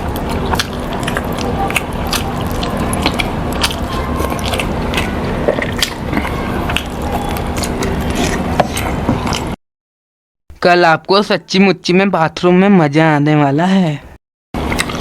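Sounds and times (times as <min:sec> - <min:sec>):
man chewing and lip-smacking: 0:00.0 - 0:09.6, 0:14.6 - 0:15.0.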